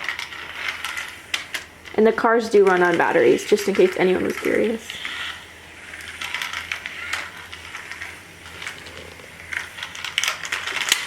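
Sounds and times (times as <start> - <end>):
clicks and rattles on plastic track: 0.0 - 11.0
toy car motor hum: 0.0 - 11.0.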